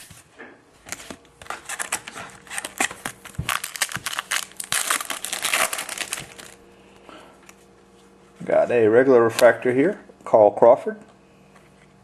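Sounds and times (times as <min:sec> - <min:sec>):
foil wrapper tearing and crinkling: 0:01.5 - 0:06.6.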